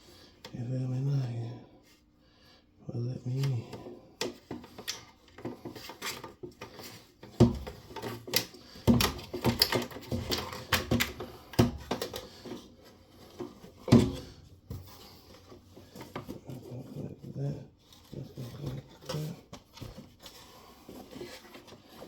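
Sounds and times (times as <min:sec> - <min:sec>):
hard objects knocking and clattering: 0:04.2 - 0:12.6.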